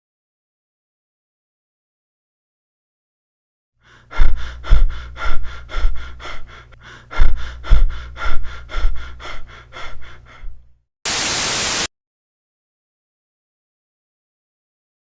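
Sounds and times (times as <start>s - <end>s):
rapid regular breathing: 3.8s - 10.8s
steady low hum: 3.9s - 10.8s.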